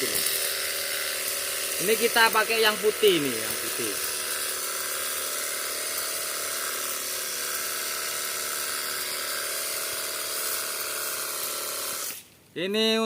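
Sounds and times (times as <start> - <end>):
water spraying hiss: 0.0 - 5.3
pressure washer pump whining: 0.0 - 12.3.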